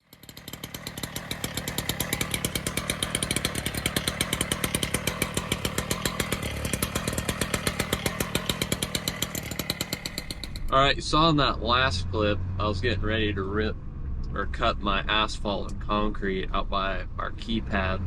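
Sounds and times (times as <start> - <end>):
hydraulic breaker hammering concrete: 0.0 - 10.7
loader engine running: 0.0 - 18.0.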